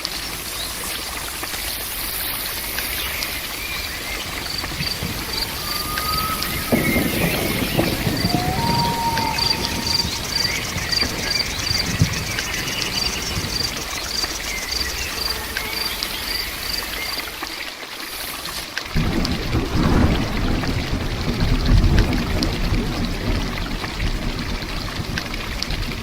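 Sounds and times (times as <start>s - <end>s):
heavier pouring water: 0.0s - 18.3s
heavy rain: 0.0s - 26.0s
insect chirping: 0.1s - 18.5s.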